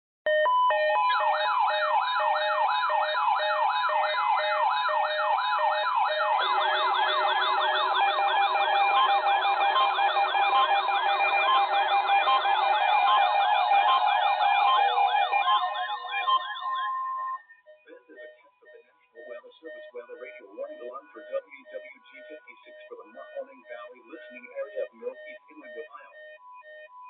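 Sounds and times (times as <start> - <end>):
rising and falling siren sweeps: 0.3 - 17.7
faster-sweeping siren: 0.3 - 27.0
steady and on-off alarm tones: 0.3 - 27.0.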